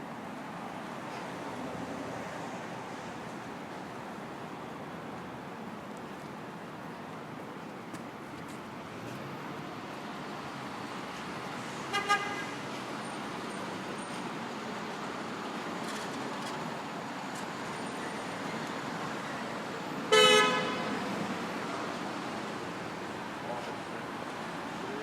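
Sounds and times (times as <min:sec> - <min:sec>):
city street traffic: 0:00.0 - 0:25.0
car horns honking: 0:11.9 - 0:12.5, 0:20.1 - 0:21.0.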